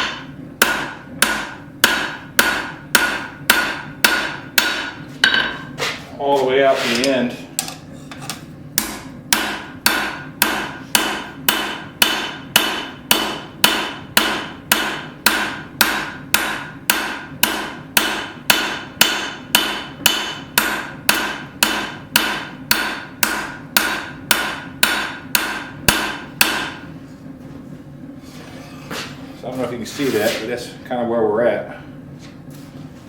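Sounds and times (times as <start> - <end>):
hammer striking steel on anvil: 0.0 - 5.7, 7.0 - 26.8.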